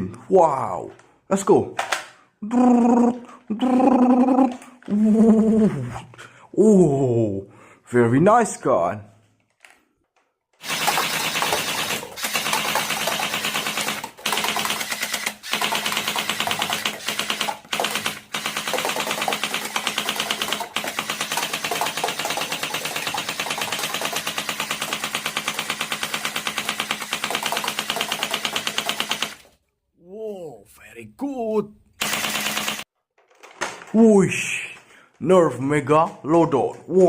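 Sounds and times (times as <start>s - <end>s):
toy gun firing rattle: 10.6s - 29.6s, 32.0s - 32.9s.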